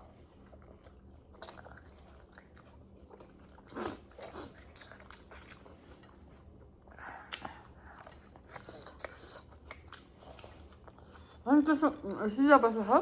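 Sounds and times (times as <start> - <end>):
chewing and biting food: 0.0 - 11.5
wet smacks and clicks: 7.3 - 7.6.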